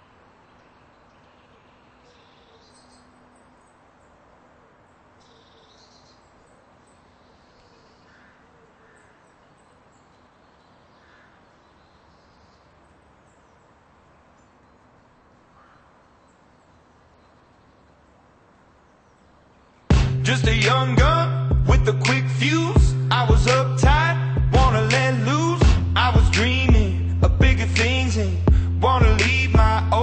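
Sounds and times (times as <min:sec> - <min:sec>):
faint background hiss: 0:00.0 - 0:30.0.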